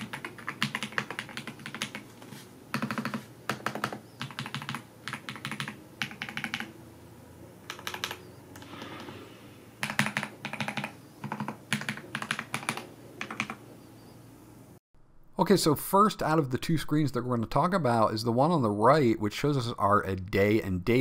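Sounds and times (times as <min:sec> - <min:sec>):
mechanical keyboard typing: 0:00.0 - 0:02.1, 0:02.7 - 0:06.7, 0:07.7 - 0:08.7, 0:09.8 - 0:13.6.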